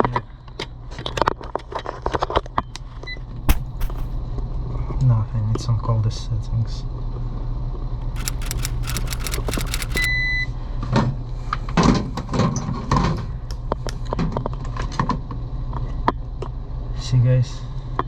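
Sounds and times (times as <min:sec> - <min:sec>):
handling knocks and rustles: 0:03.5 - 0:04.2
sharp clicks: 0:03.5 - 0:04.2, 0:08.0 - 0:10.1.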